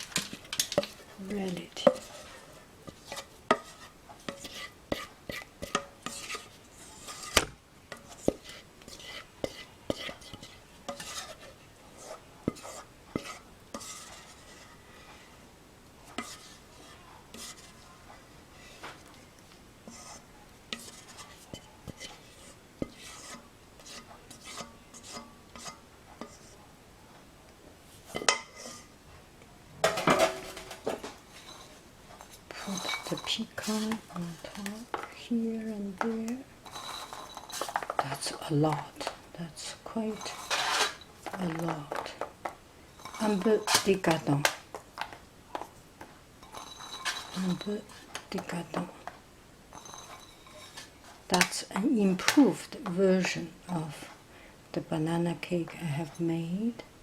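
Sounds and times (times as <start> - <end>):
utensils scraping a bowl: 0.0 - 14.8, 16.1 - 17.8, 19.8 - 26.6, 29.9 - 35.1, 36.6 - 42.2, 42.9 - 44.4, 46.4 - 48.9, 49.7 - 51.6
utensils and dishes clinking: 29.8 - 34.1, 36.6 - 38.4, 40.1 - 42.2, 43.0 - 44.3, 46.4 - 48.1, 49.7 - 51.5.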